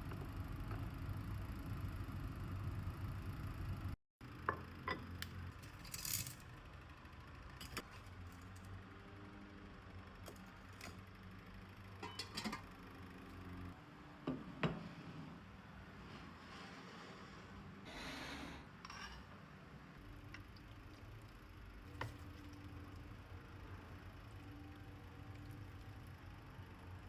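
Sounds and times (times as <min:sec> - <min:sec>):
crockery and utensils clinking: 0:12.0 - 0:12.6.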